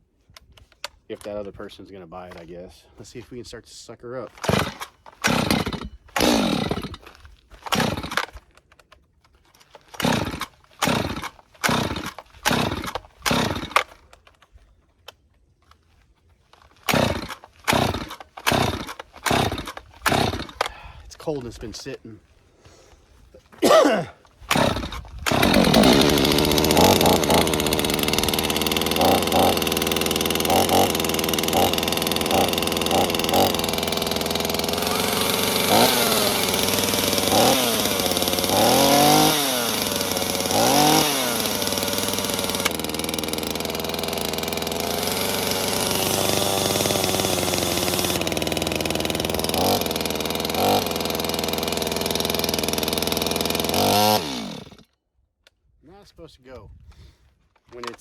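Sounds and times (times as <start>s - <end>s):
chainsaw starting and revving: 4.3s - 8.5s, 9.5s - 14.3s, 16.4s - 20.8s, 23.6s - 55.0s.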